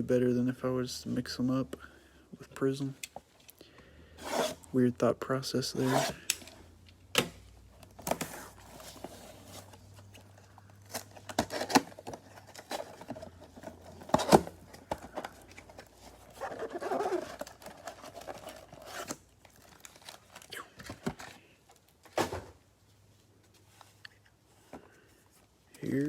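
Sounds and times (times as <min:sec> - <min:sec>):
packaging rustling: 0:07.9 - 0:22.0.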